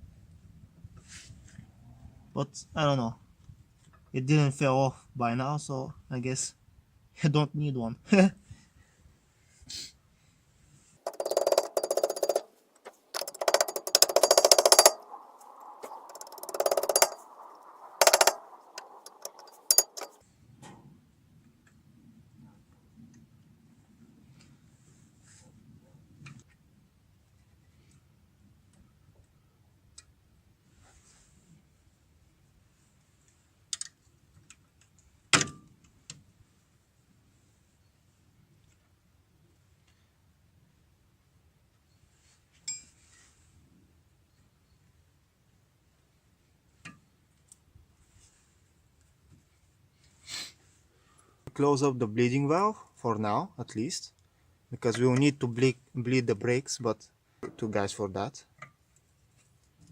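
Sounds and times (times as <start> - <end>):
rapid metallic clicking: 11.0 - 20.2.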